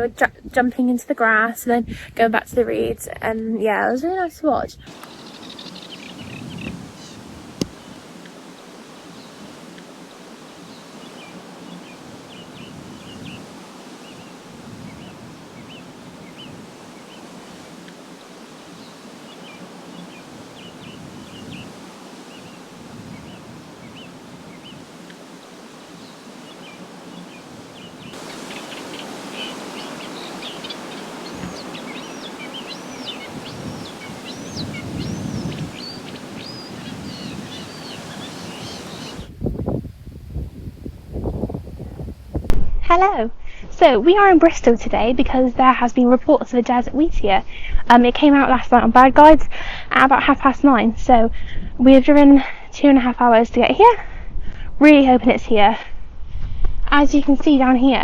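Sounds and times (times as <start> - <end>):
reed warblers singing: 3.6 - 42.2.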